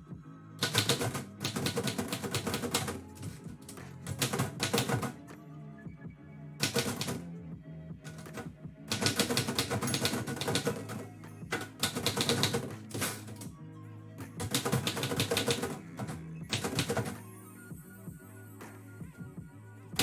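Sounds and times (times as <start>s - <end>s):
lo-fi background music: 0.0s - 20.0s
manual typewriter typing: 0.6s - 5.2s, 6.6s - 7.2s, 8.1s - 13.5s, 14.4s - 17.2s.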